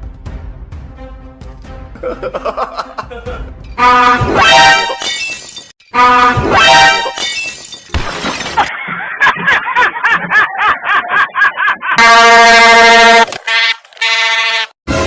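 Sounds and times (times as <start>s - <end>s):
high-pitched horn blast: 3.7s - 5.0s, 5.9s - 7.2s, 12.0s - 15.0s
train horn blast: 3.8s - 4.9s, 12.0s - 15.0s
shattering crash: 7.1s - 8.7s.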